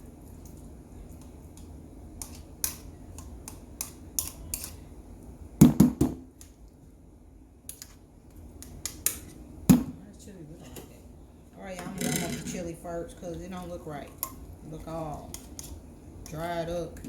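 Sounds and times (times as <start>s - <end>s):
loud knocks on a counter: 5.6s - 6.2s.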